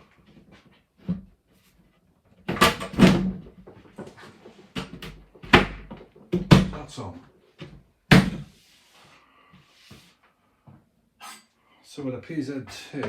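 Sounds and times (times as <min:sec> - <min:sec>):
cabinet panels knocking and clunking: 0:02.4 - 0:04.0, 0:04.7 - 0:06.9, 0:07.6 - 0:08.5.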